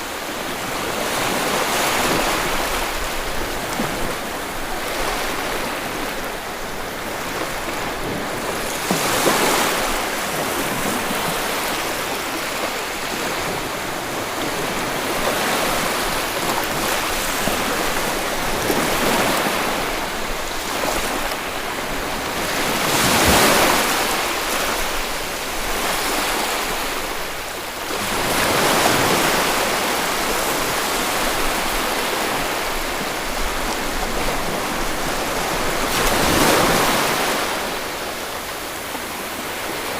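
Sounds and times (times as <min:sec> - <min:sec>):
sea waves breaking on a beach: 0:00.0 - 0:39.9.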